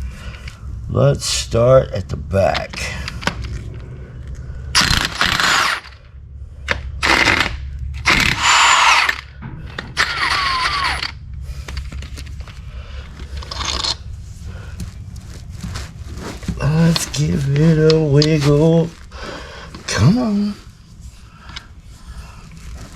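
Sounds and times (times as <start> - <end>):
impact wrench bursts: 4.8 - 6.0, 6.7 - 11.2.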